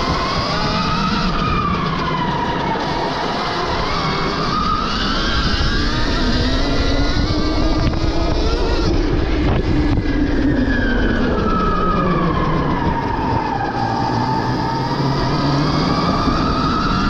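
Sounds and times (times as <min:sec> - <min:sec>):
electric dirt bike motor whining: 0:00.0 - 0:17.0.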